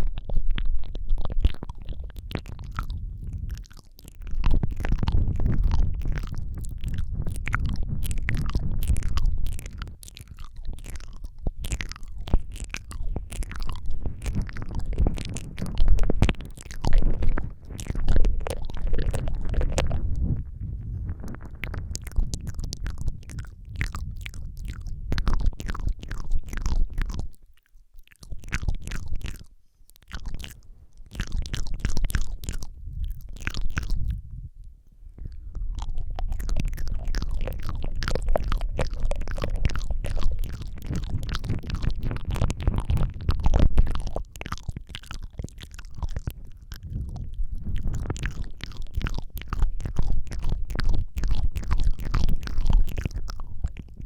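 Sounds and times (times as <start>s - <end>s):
wet mouth clicks and smacks: 0.0s - 54.0s
low rumble: 4.2s - 27.0s.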